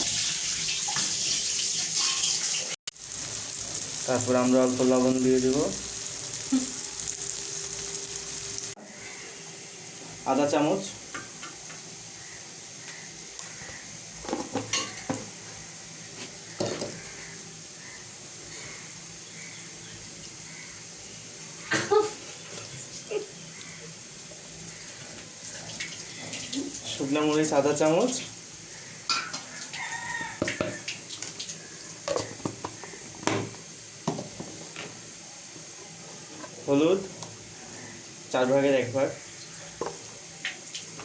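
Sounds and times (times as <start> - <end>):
onion sizzling in hot oil: 0.0 - 41.0
spoon knocking against pan: 30.4 - 30.8.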